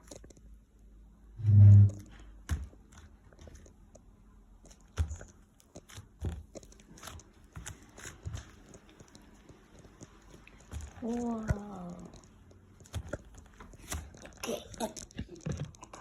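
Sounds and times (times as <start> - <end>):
low pitched hum: 1.0 - 2.3
slime squishing: 1.4 - 16.0.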